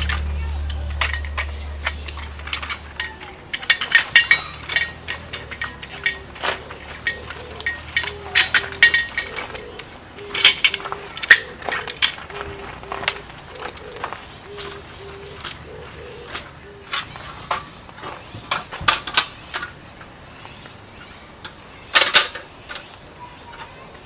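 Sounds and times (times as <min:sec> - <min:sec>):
metal dishes and utensils clinking: 0:00.0 - 0:14.6.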